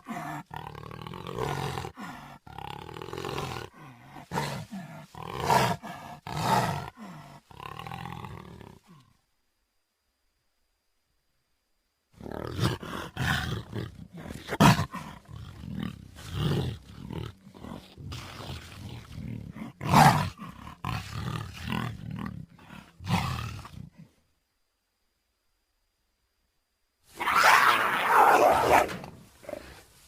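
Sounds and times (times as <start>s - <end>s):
big cat roaring and growling: 0.0s - 9.1s, 12.2s - 24.1s, 27.2s - 29.8s.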